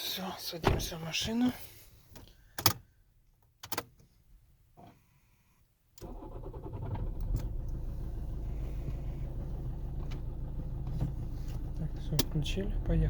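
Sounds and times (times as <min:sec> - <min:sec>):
diesel engine starting and idling: 0:06.0 - 0:13.0.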